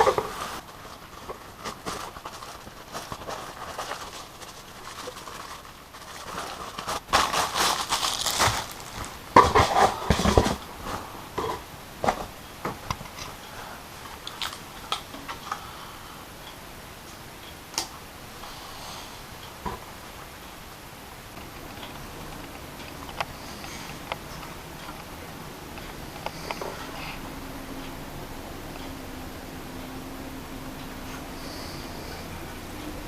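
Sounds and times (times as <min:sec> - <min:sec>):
plastic and cardboard rustling: 0:00.0 - 0:13.4.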